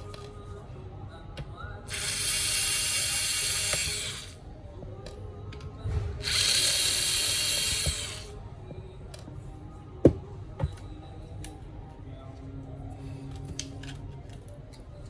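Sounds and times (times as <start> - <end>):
electric screwdriver whirring: 1.9 - 4.4, 6.2 - 8.3.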